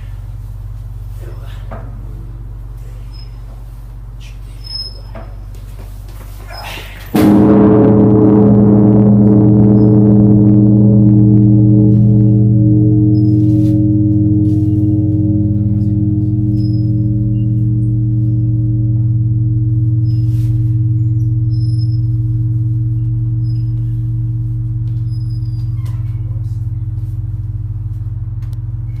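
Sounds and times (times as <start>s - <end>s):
large bell humming: 7.1s - 29.0s.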